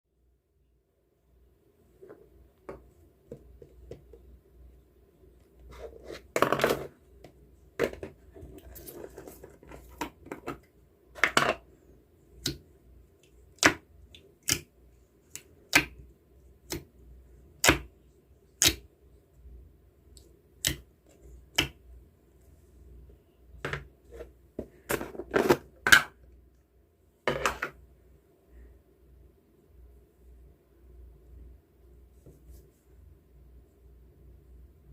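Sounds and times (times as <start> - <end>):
faint low hum: 0.1 - 34.9.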